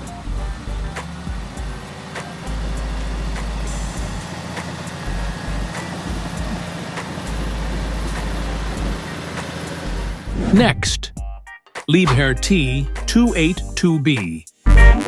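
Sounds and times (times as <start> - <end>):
heavy machinery engine rumble: 0.0 - 10.8.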